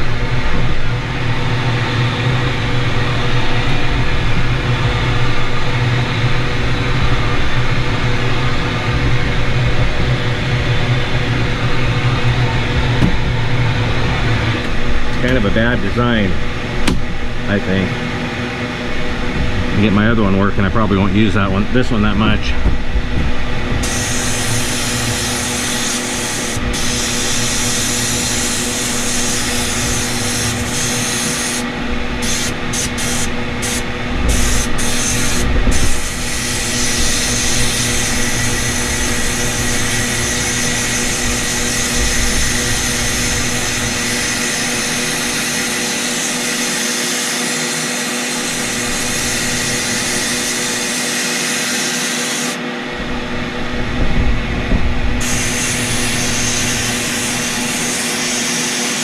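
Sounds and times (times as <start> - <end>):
steady hum: 0.0 - 59.0
sandblaster hissing: 23.8 - 52.6, 55.2 - 59.0.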